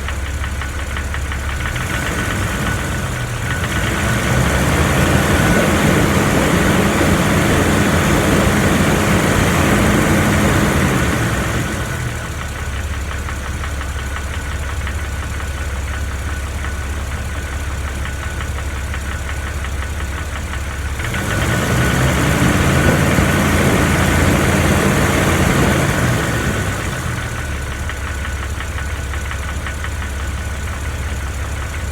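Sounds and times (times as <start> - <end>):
engine ticking rattle: 0.0 - 31.9
car engine revving: 1.6 - 12.5, 20.2 - 27.7.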